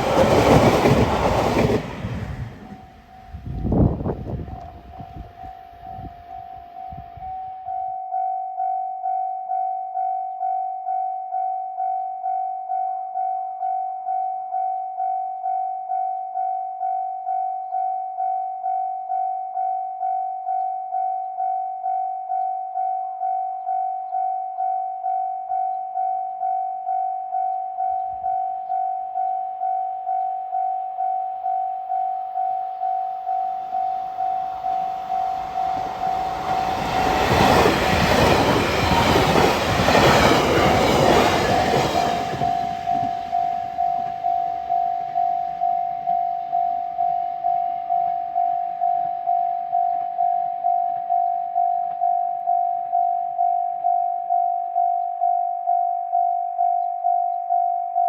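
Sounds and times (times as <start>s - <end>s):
train wheels on rails: 0.0s - 5.1s, 33.9s - 45.8s
level crossing warning bell: 14.0s - 56.1s.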